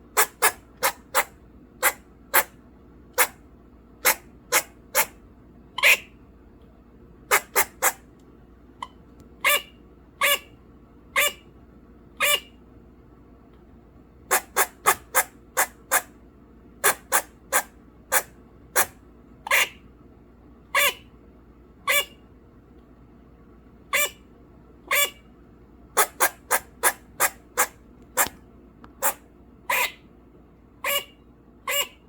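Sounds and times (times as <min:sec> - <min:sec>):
squirrel barking alarm calls: 0:00.1 - 0:03.4, 0:04.0 - 0:05.2, 0:05.8 - 0:06.2, 0:07.3 - 0:08.0, 0:09.4 - 0:11.5, 0:12.2 - 0:12.6, 0:14.3 - 0:16.2, 0:16.8 - 0:19.9, 0:20.7 - 0:21.1, 0:21.9 - 0:22.2, 0:23.9 - 0:24.3, 0:24.9 - 0:25.3, 0:25.9 - 0:28.4, 0:29.0 - 0:30.1, 0:30.8 - 0:32.0.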